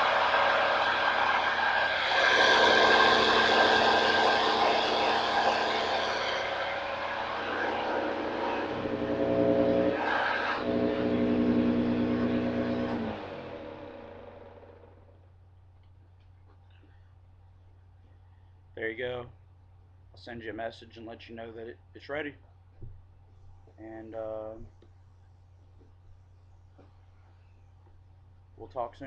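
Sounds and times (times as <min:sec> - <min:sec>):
vacuum cleaner motor hum: 0:00.0 - 0:15.1
vacuum cleaner winding down: 0:00.0 - 0:15.1.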